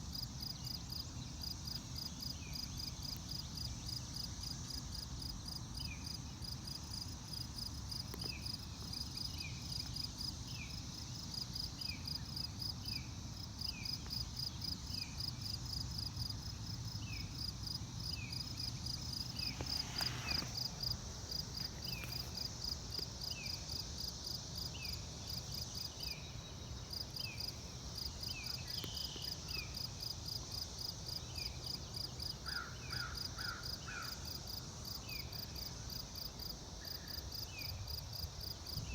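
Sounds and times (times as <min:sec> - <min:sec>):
short falling insect chirp: 0:19.1 - 0:22.6.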